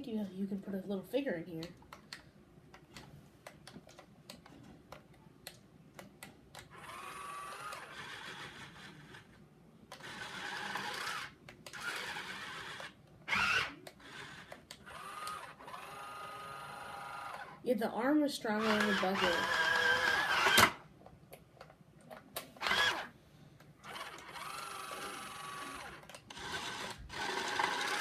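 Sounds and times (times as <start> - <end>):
small electric motors whining: 6.7 - 17.6, 18.6 - 20.8, 22.6 - 23.1, 23.8 - 28.0.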